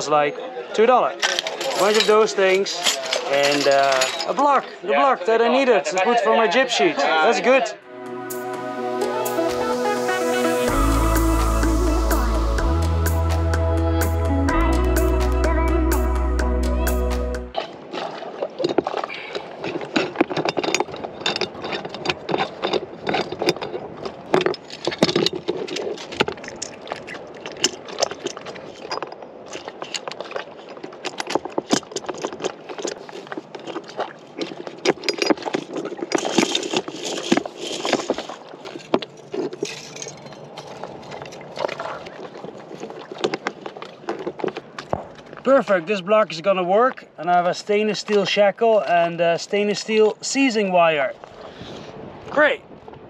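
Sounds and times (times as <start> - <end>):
metal hardware clicking and clinking: 1.2 - 4.4, 19.6 - 26.8.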